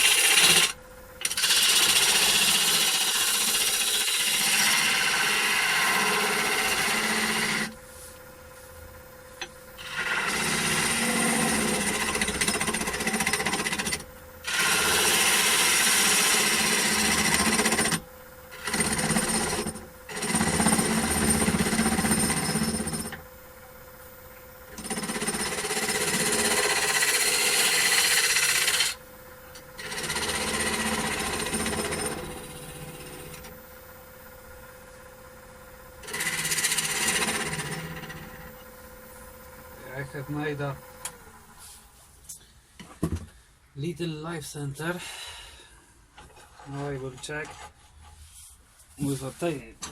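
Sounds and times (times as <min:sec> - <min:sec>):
tool cutting spinning wood: 0:00.0 - 0:07.8, 0:09.4 - 0:23.2, 0:24.7 - 0:29.0, 0:29.6 - 0:33.6, 0:36.0 - 0:38.8
lathe motor whine: 0:00.0 - 0:08.2, 0:09.3 - 0:23.2, 0:24.7 - 0:33.9, 0:36.0 - 0:41.8.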